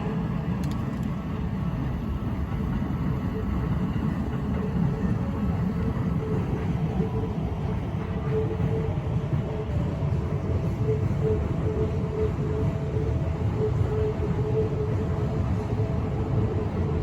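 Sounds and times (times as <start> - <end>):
train rumbling on tracks: 0.0 - 17.0.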